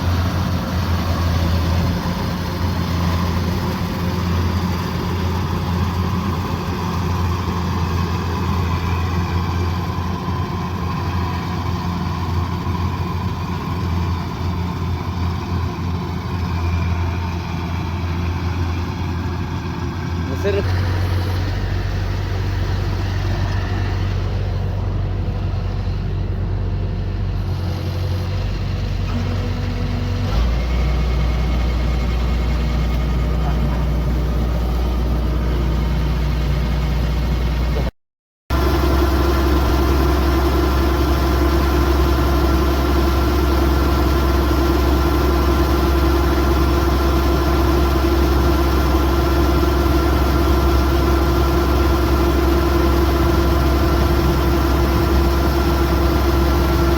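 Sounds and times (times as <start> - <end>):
combine harvester engine hum: 0.0 - 37.9, 38.5 - 56.9
steady machine whine: 38.5 - 56.9.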